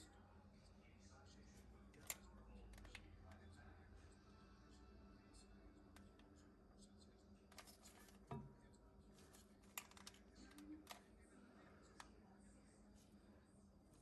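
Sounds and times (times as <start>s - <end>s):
faint low hum: 0.0s - 14.0s
faint clicks and taps: 1.9s - 3.5s, 5.8s - 12.2s.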